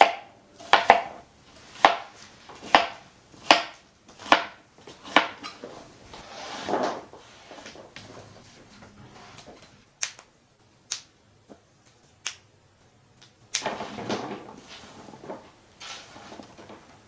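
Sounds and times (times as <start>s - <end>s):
rustling or scraping: 4.9s - 9.8s, 13.6s - 17.0s.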